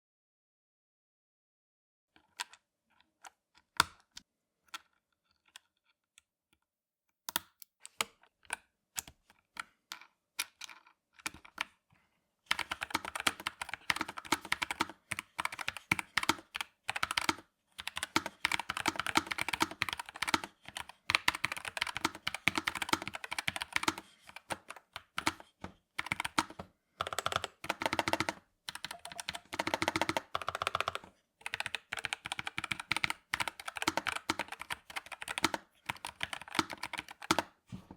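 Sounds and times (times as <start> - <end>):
mechanical keyboard typing: 12.5 - 37.6.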